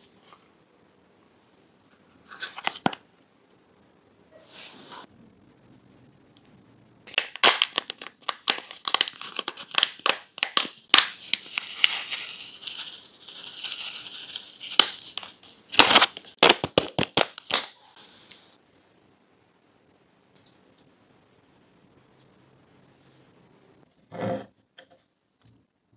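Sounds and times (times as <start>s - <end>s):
crinkling and crackling: 7.1s - 18.0s.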